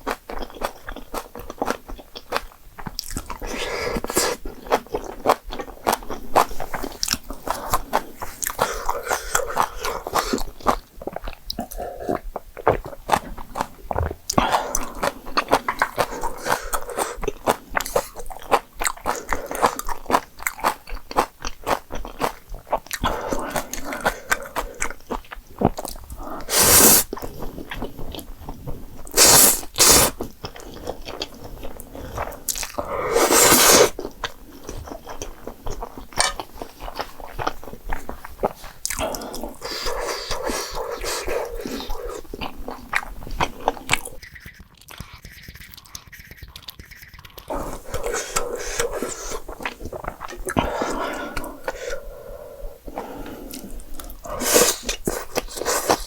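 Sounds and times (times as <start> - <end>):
wet chewing: 0.0 - 56.0
hissing bursts: 26.5 - 27.0, 29.2 - 30.1, 33.1 - 33.9.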